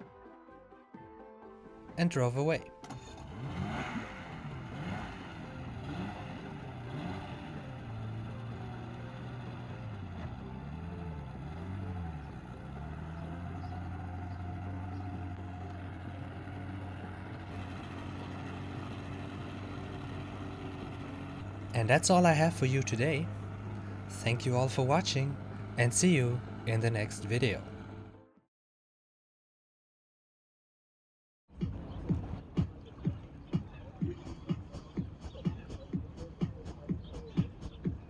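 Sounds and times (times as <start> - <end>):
motorboat engine running: 2.7 - 28.3.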